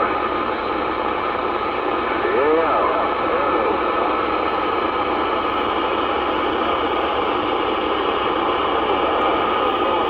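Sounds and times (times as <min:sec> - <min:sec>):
radio static hiss: 0:01.8 - 0:05.8.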